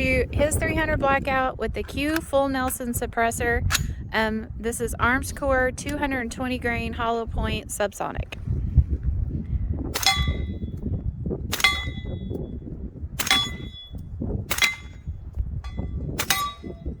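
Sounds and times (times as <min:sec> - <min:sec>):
suppressed rifle shots: 0:10.0 - 0:10.5, 0:11.5 - 0:12.3, 0:13.2 - 0:15.1, 0:16.2 - 0:16.9
metallic target ring: 0:10.0 - 0:10.6, 0:11.5 - 0:12.4, 0:13.2 - 0:17.0.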